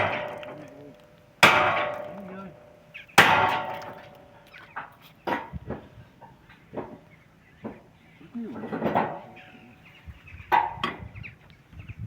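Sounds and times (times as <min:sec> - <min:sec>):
hammer striking steel: 0:01.4 - 0:04.2.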